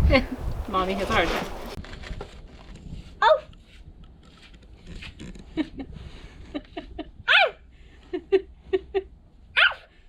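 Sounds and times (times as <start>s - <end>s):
small puppy barking and yipping: 9.6s - 9.9s.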